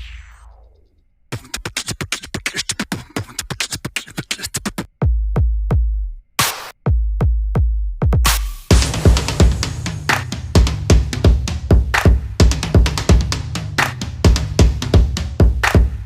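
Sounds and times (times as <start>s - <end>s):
fast ticking drum machine: 1.3s - 5.5s, 8.0s - 16.0s
sharp electronic hits: 8.7s - 11.2s.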